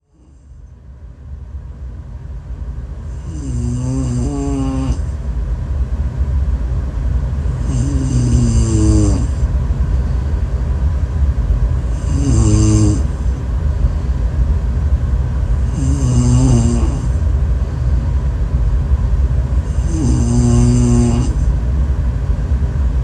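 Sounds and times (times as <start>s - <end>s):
person snoring: 0.0s - 0.5s, 3.1s - 5.1s, 7.6s - 9.4s, 11.9s - 13.3s, 15.5s - 17.2s, 19.6s - 21.5s
steady low rumble: 0.3s - 23.0s.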